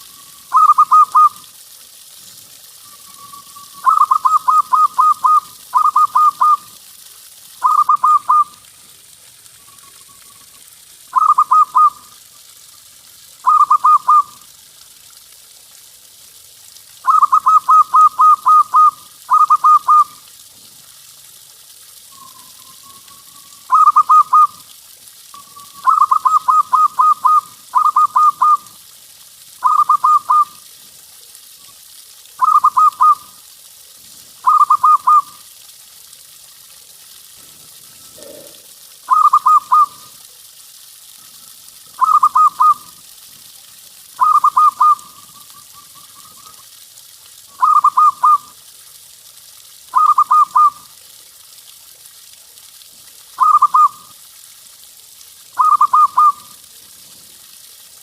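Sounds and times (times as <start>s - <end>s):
steady hiss: 0.0s - 49.3s, 52.9s - 58.0s
dove cooing: 0.5s - 1.4s, 3.8s - 6.6s, 11.2s - 12.0s, 13.4s - 14.3s, 17.1s - 20.1s, 23.7s - 24.6s, 25.8s - 28.7s, 29.6s - 30.5s, 34.4s - 35.3s, 37.9s - 40.0s, 42.0s - 42.9s, 44.2s - 45.5s, 55.6s - 56.4s.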